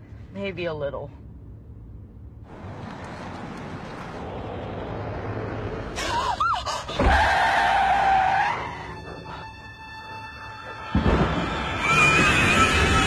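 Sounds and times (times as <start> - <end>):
car approaching: 1.2 - 9.5
tyres squealing: 6.0 - 9.4.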